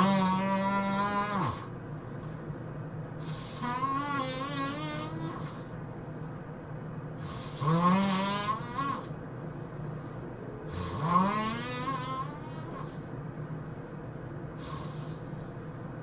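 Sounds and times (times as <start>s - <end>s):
person snoring: 0.0s - 1.7s, 3.2s - 5.6s, 7.2s - 9.1s, 10.7s - 13.1s
low steady hum: 0.0s - 16.0s.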